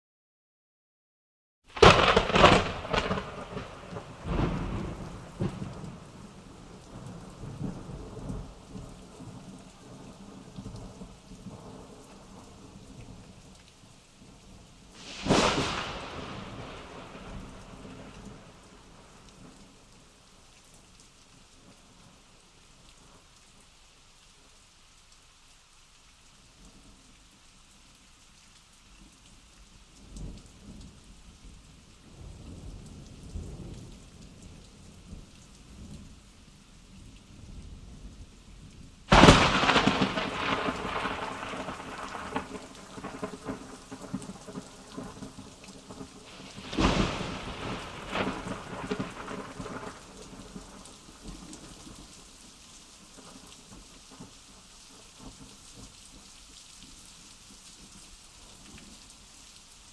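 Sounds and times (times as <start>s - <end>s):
rain falling: 1.7s - 59.9s
loud thunderclap: 1.8s - 6.0s, 15.0s - 18.5s, 39.1s - 45.2s, 46.5s - 50.0s
low thunder rumbles: 1.8s - 12.5s, 15.0s - 19.2s, 39.1s - 51.7s.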